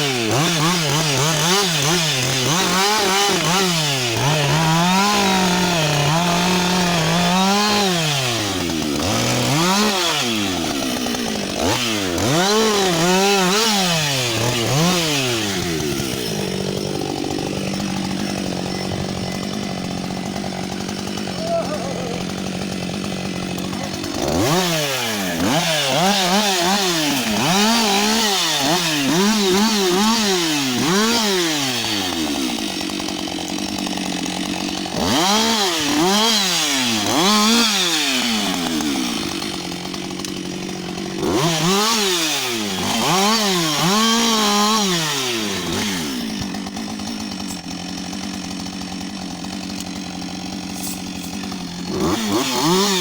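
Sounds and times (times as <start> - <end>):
chainsaw revving and idling: 0.0 - 53.0.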